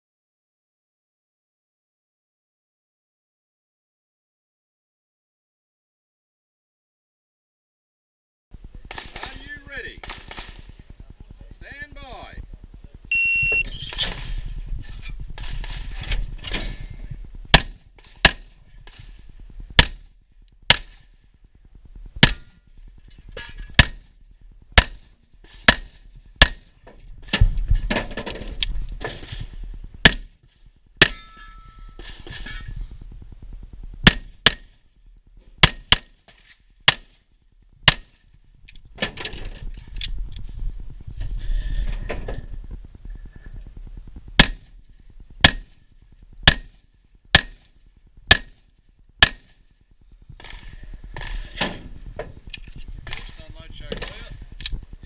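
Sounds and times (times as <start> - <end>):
pistol shots: 8.9 - 9.4, 10.0 - 10.7, 19.8 - 20.0.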